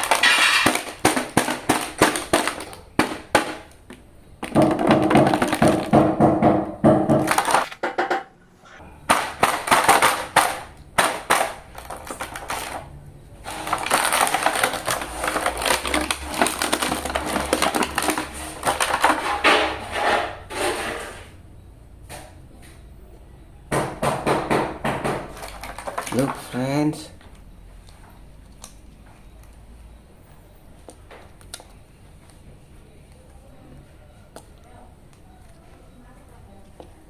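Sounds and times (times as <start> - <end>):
plastic packaging crinkling: 0.0 - 6.0, 7.2 - 7.8, 9.1 - 19.4, 25.3 - 26.7.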